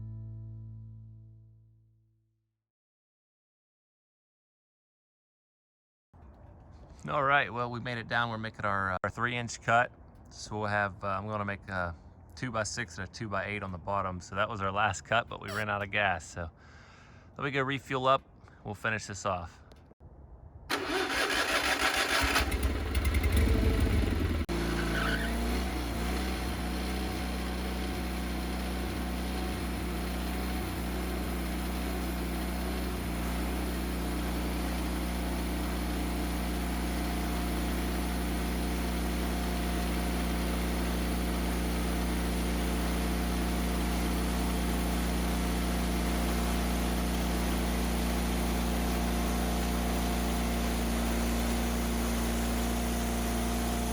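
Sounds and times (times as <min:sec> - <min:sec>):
gas engine cranking and running: 0:20.7 - 0:53.9.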